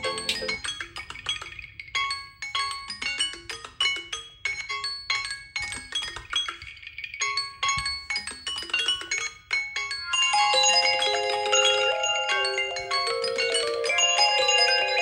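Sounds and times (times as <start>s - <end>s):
phone alarm melody: 0.0s - 0.6s, 9.9s - 15.0s.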